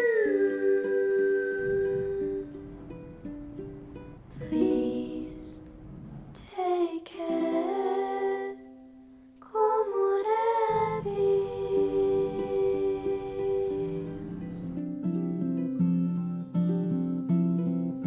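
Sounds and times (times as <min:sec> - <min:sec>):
person singing: 0:00.0 - 0:03.4, 0:04.4 - 0:05.8, 0:06.4 - 0:15.6
gentle ukulele song: 0:00.0 - 0:18.0.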